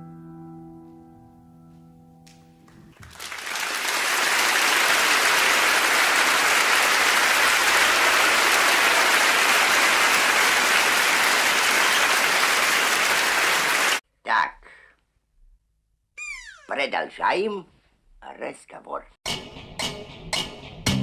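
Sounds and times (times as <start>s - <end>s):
crowd applauding: 3.0s - 14.0s.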